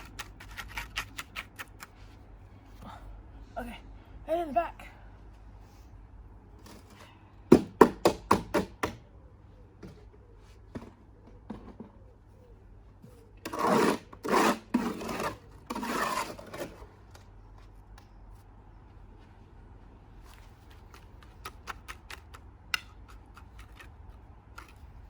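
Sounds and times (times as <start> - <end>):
tool scraping cement: 0.0 - 1.9, 13.4 - 16.8.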